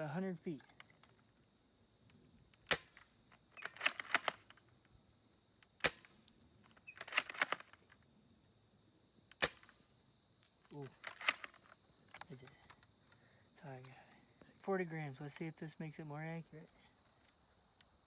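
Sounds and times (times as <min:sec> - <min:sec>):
rifle bolt clicks: 0:02.5 - 0:04.6, 0:05.7 - 0:07.8, 0:09.3 - 0:09.8, 0:10.4 - 0:12.9
airsoft rifle shot crack: 0:02.7 - 0:03.1, 0:05.8 - 0:06.2, 0:09.4 - 0:09.8.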